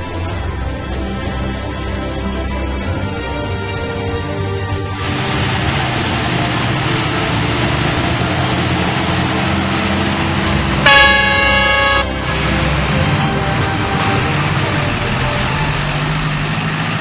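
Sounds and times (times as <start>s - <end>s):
harvest machinery running: 0.0s - 17.0s
vehicle horn: 10.8s - 12.6s.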